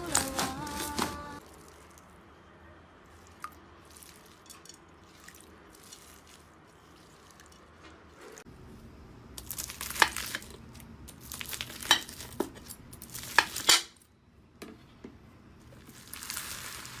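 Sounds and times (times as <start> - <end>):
slime crackling and popping: 15.9 - 17.0.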